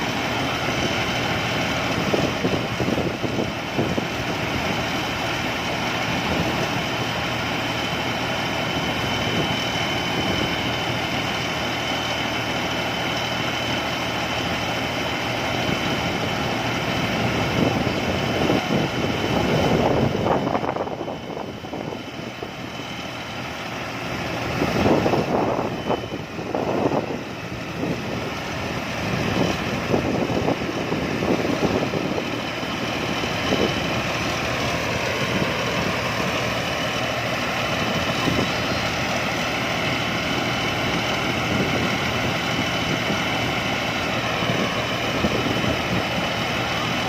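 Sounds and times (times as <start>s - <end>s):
combine harvester engine running: 0.0s - 47.0s
faint high whine: 0.0s - 47.0s.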